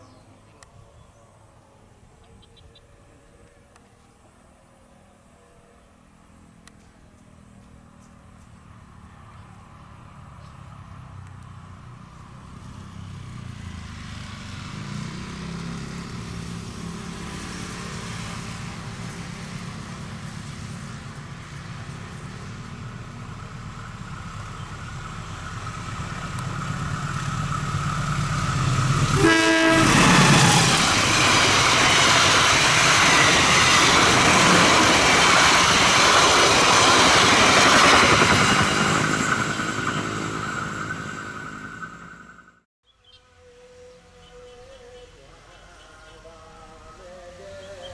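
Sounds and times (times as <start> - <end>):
diesel locomotive engine hum: 0.0 - 47.9
train cars rushing past: 6.8 - 42.7.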